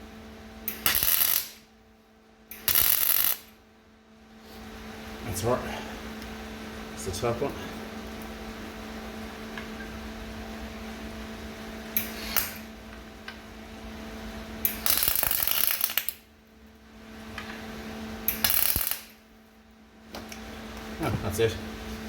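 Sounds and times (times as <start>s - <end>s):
steady low hum: 0.0s - 22.0s
welding arc crackling: 0.6s - 1.7s, 2.5s - 3.6s, 11.9s - 12.8s, 14.6s - 16.2s, 18.2s - 19.2s.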